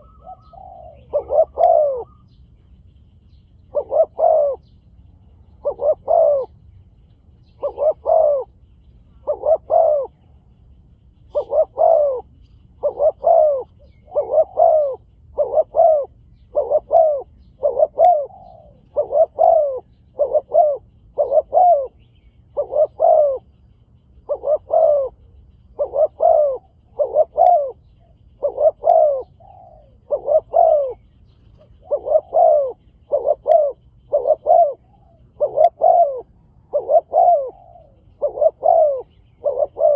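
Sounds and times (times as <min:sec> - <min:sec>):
doves cooing: 0:00.0 - 0:02.6, 0:03.6 - 0:06.8, 0:07.4 - 0:39.9.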